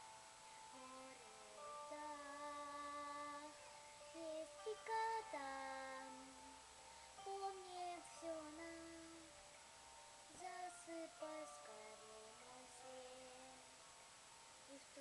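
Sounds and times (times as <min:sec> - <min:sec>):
woman singing slow ballad: 0:00.7 - 0:06.5, 0:07.2 - 0:09.4, 0:10.3 - 0:13.7.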